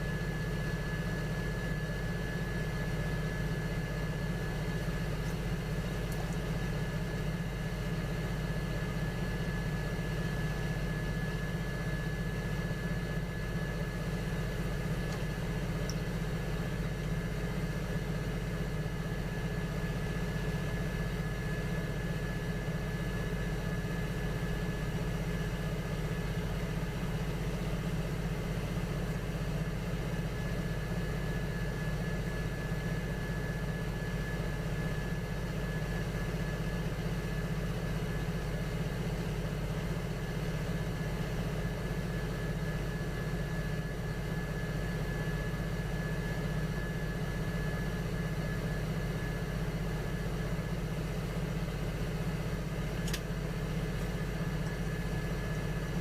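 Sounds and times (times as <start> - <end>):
potter's wheel motor humming: 2.0 - 10.0.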